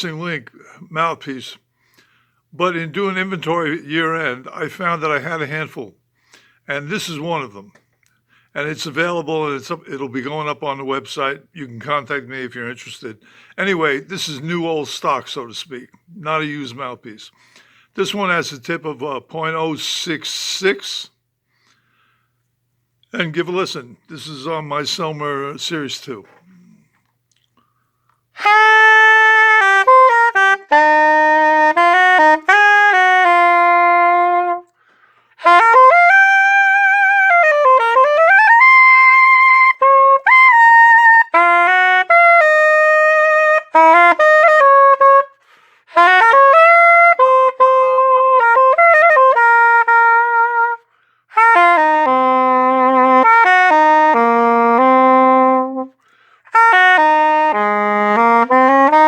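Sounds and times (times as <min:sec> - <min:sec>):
player breathing: 0:01.7 - 0:02.5, 0:06.1 - 0:06.6, 0:13.2 - 0:13.6, 0:17.3 - 0:18.0, 0:21.4 - 0:22.5, 0:34.7 - 0:35.4, 0:45.3 - 0:45.9, 0:50.8 - 0:51.3, 0:56.0 - 0:56.5
soprano saxophone solo: 0:28.3 - 0:59.0.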